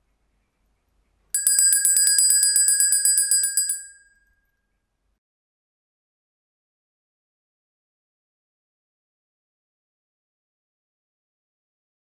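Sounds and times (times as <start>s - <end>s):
handbell ringing: 1.4s - 4.1s.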